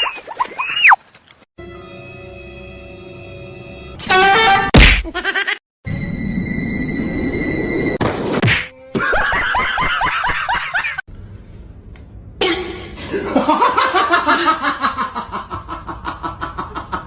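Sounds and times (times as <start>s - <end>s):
person laughing hard: 8.9s - 11.0s.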